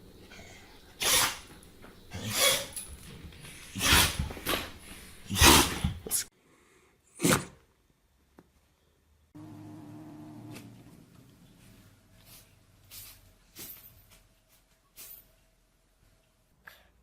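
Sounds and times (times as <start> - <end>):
pet sneezing: 1.0 - 1.5, 2.1 - 2.8, 3.7 - 6.3.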